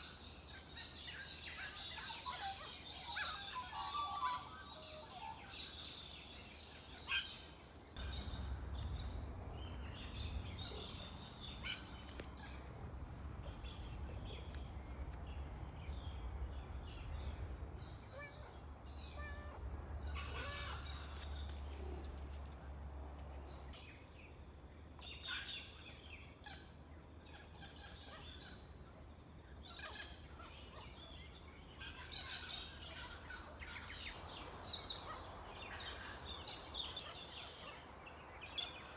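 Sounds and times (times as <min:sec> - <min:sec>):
birds chirping: 0:08.0 - 0:23.8
low steady rumble: 0:08.0 - 0:23.8.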